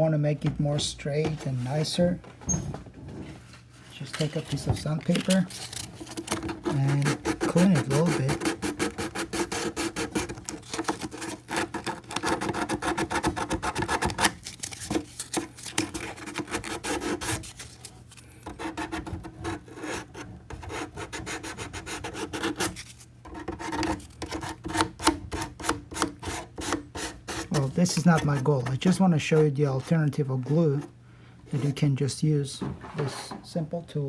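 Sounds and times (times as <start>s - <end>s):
sandpaper rubbing on plastic: 4.2s - 17.8s, 18.4s - 30.9s.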